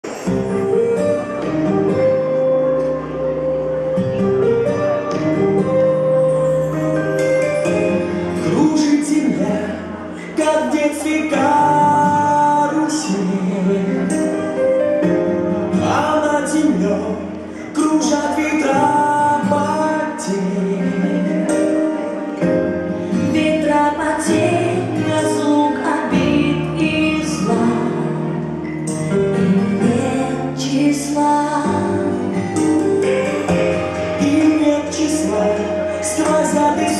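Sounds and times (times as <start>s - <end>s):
instrumental accompaniment: 0.0s - 36.9s
person singing: 0.1s - 36.9s
woman singing a gentle song: 23.2s - 28.2s, 29.8s - 32.4s.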